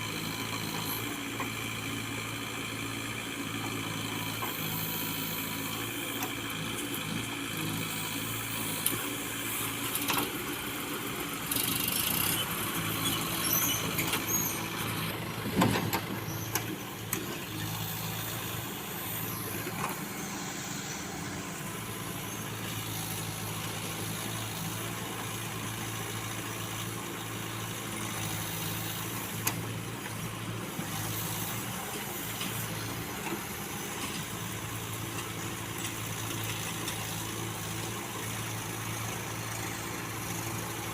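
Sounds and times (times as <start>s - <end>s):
backhoe loader engine running: 0.0s - 40.9s
hissing and squeaks: 12.1s - 14.7s.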